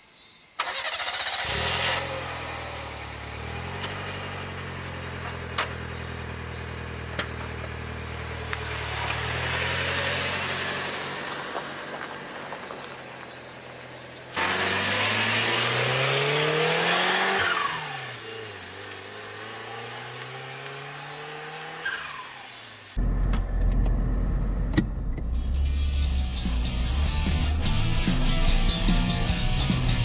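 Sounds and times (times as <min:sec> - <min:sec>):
car engine idling: 0:00.7 - 0:25.4.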